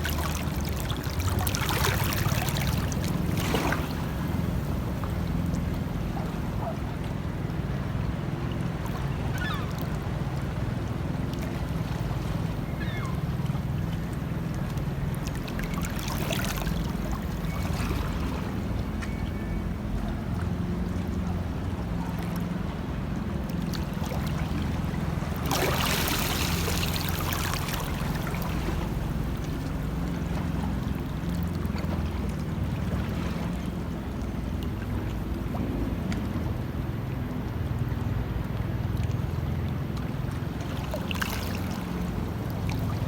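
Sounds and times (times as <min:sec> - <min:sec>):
sea water lapping and splashing: 0:00.0 - 0:43.0.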